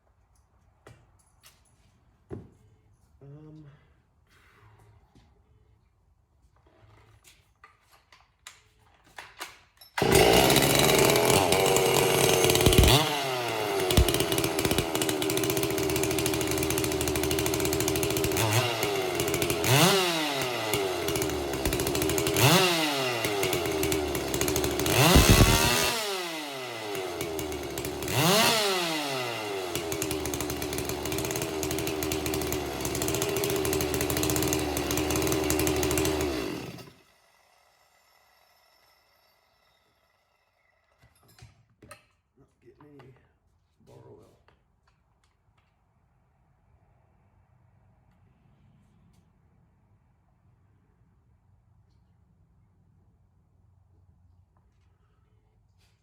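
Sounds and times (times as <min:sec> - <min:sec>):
chainsaw revving and idling: 0:10.0 - 0:39.4.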